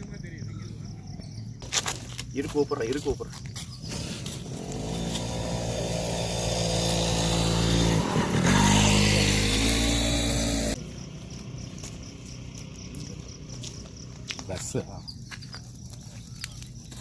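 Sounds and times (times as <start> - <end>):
vehicle engine revving: 3.8 - 10.8.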